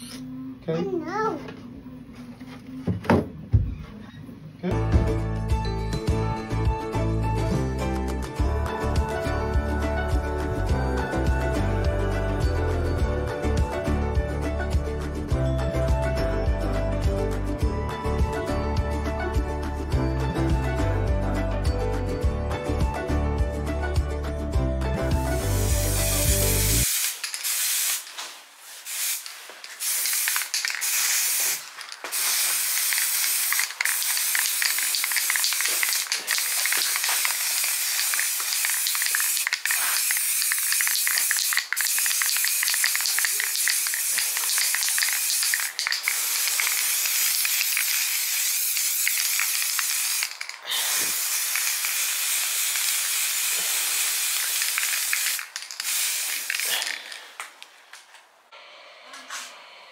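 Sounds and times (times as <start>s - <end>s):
spray can hissing: 25.3s - 57.3s.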